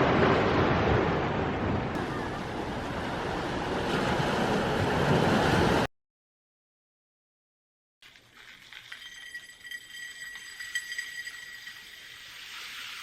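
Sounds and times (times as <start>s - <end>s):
ocean waves washing ashore: 0.0s - 5.9s.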